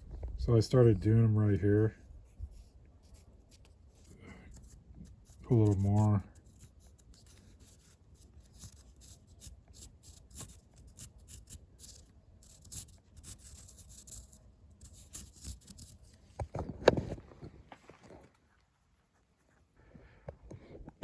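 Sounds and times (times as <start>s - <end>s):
tool scratching wood carving: 3.1s - 16.2s.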